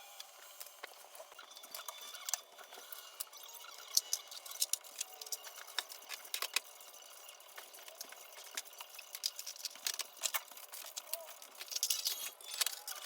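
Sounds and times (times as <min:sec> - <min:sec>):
clothes rustling and clicking: 0:03.9 - 0:13.0.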